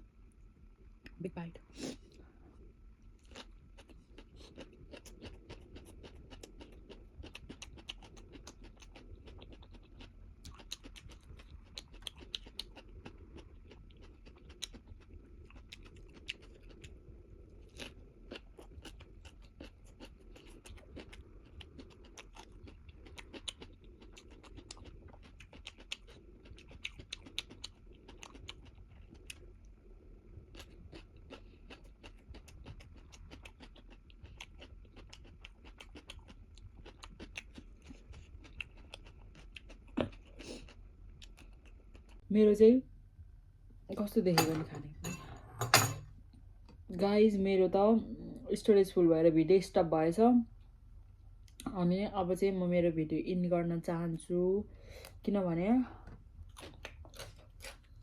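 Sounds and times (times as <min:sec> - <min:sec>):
person chewing noodles: 0:01.8 - 0:42.2, 0:56.0 - 0:58.0.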